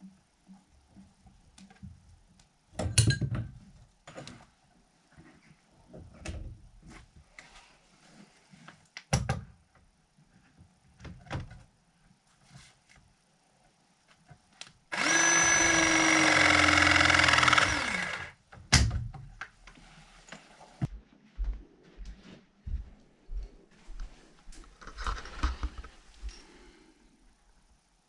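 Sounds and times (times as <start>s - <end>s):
power drill running: 14.9s - 18.4s.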